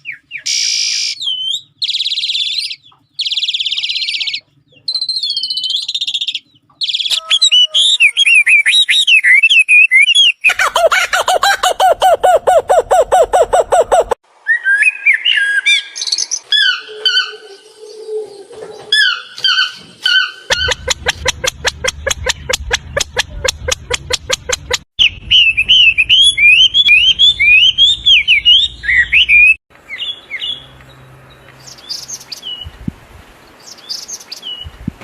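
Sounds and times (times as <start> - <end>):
whistled bird phrases: 0.0 - 10.6, 14.4 - 18.5, 25.0 - 30.6
warbling bird chirps: 0.0 - 18.4, 19.0 - 30.7.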